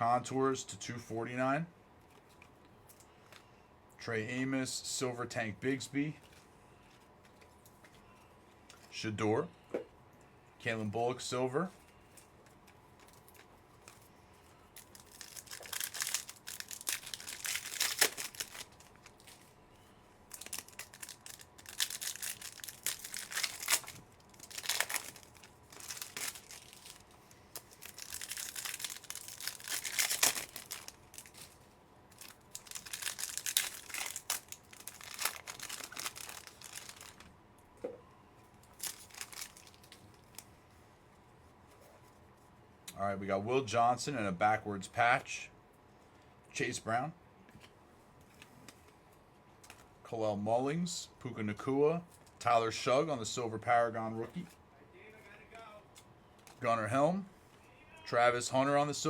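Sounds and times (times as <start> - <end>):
foil wrappers tearing and crinkling: 14.8 - 19.5, 20.3 - 37.3, 38.7 - 40.4.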